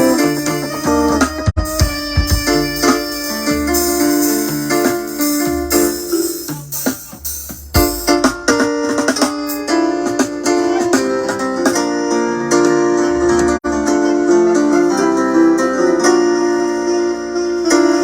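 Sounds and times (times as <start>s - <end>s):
deep bass notes: 0.0s - 8.6s
sharp percussive hits: 0.0s - 11.8s.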